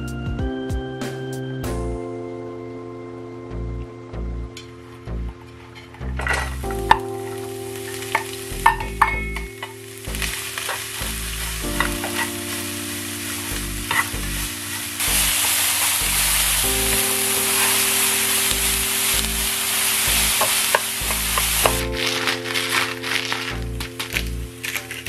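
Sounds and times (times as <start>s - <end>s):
pancake batter sizzling in pan: 6.5s - 25.0s.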